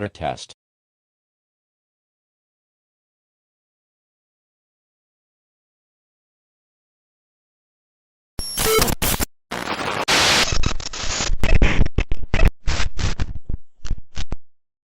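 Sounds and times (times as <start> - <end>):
glitching static bursts: 8.4 - 13.2.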